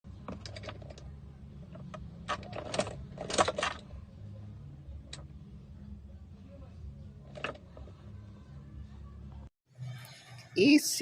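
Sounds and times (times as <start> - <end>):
low steady hum: 0.1 - 10.7
metallic clinking and rattling: 0.2 - 4.0.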